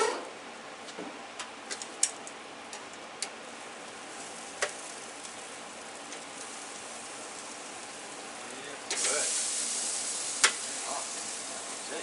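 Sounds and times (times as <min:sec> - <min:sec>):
faint grill hiss: 0:00.6 - 0:12.0
metal tongs clicking on grill grate: 0:08.9 - 0:09.2, 0:10.4 - 0:10.7.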